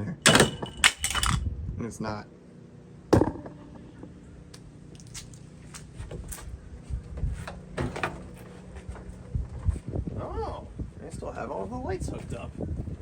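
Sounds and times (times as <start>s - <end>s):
car body parts knocking and rattling: 7.5s - 9.1s.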